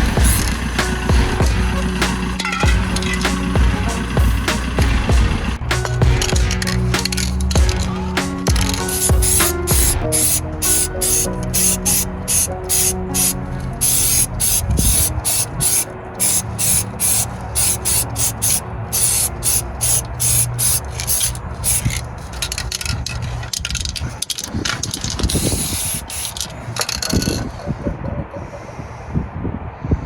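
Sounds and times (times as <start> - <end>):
steady low hum: 0.0 - 10.6
welder crackling: 0.0 - 27.6.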